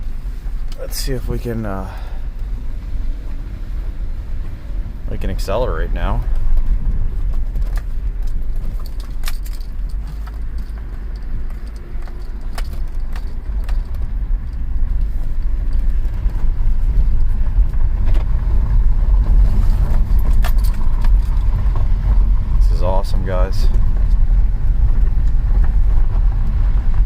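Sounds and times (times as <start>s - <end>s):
car engine: 0.0s - 27.0s
road noise: 0.0s - 27.0s
light clicks and jingles: 7.3s - 16.2s, 20.0s - 21.6s.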